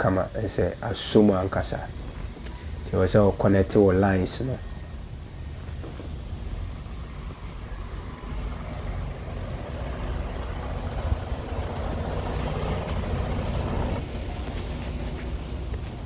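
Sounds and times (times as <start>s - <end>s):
diesel engine idling: 4.5s - 16.0s.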